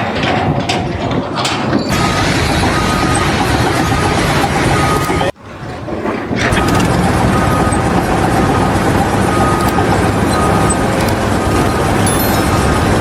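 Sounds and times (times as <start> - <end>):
heavy machinery running: 0.0 - 13.0.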